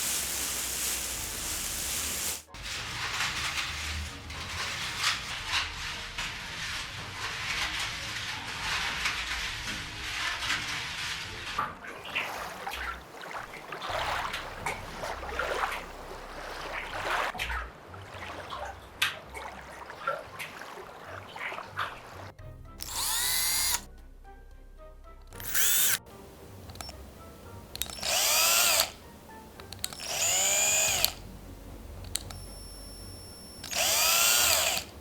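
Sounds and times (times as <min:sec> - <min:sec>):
crackling and rustling: 0:00.0 - 0:11.6
small electric motor whining: 0:22.8 - 0:23.8, 0:25.4 - 0:31.2, 0:32.1 - 0:35.0
clicks: 0:25.2 - 0:31.2, 0:32.0 - 0:34.9.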